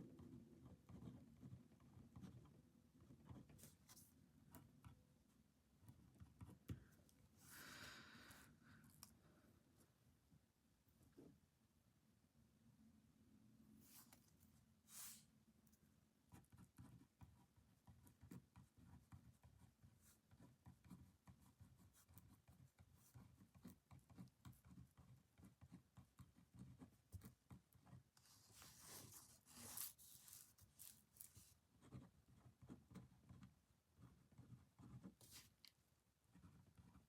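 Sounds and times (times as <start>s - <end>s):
pen scratching on paper: 0.2s - 5.0s, 16.3s - 35.6s, 36.3s - 37.0s.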